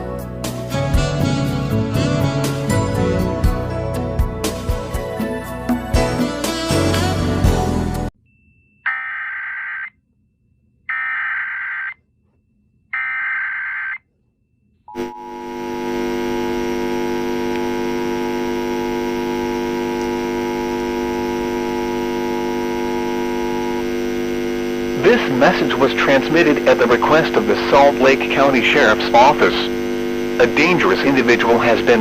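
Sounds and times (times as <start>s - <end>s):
buzzy digital data bursts: 10.9s - 11.9s, 15.3s - 32.0s
two-tone attention signal: 14.9s - 25.0s
click: 20.0s - 20.2s.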